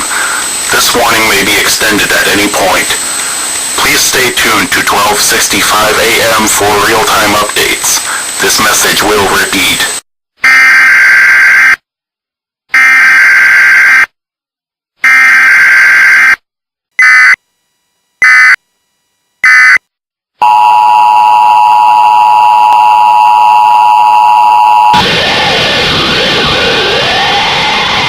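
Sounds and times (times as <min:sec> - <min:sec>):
digital data bursts: 0:00.0 - 0:09.9
noisy sound: 0:00.0 - 0:10.0, 0:20.4 - 0:28.0.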